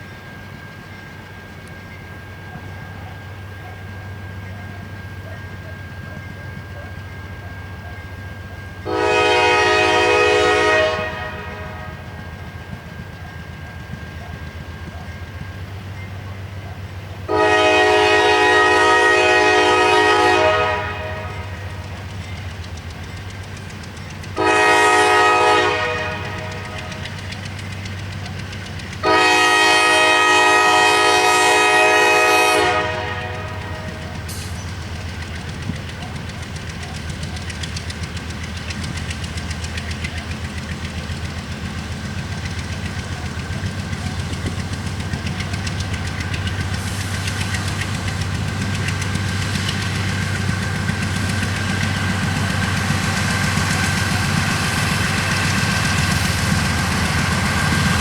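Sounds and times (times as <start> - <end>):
diesel locomotive engines rumbling: 0.0 - 58.0
locomotive air horn chord: 8.8 - 12.3, 17.2 - 21.8, 24.4 - 27.1, 29.0 - 34.6.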